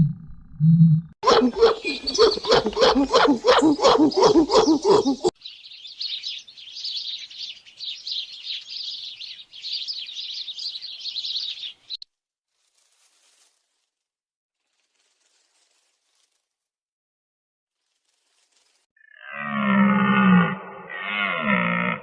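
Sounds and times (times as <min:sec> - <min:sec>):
rapid pitched animal calls: 0:01.2 - 0:05.3
birds chirping and twittering: 0:01.2 - 0:12.0.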